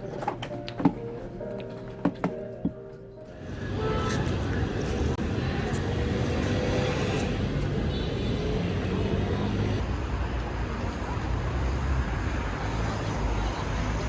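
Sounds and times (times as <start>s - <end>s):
moving car rumble and road noise: 3.3s - 14.0s.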